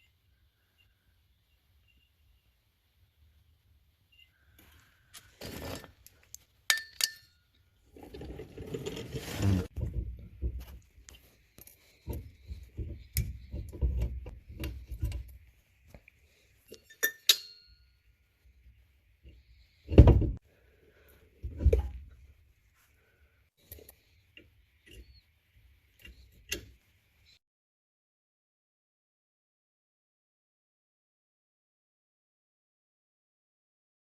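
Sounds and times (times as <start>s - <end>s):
metal tools clinking: 6.7s - 7.4s, 16.7s - 17.8s
metal scraping: 7.9s - 15.4s.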